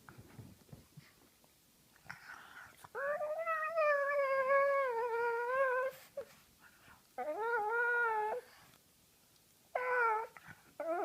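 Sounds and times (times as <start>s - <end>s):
dog whining: 3.0s - 6.3s, 7.2s - 8.5s, 9.7s - 11.0s.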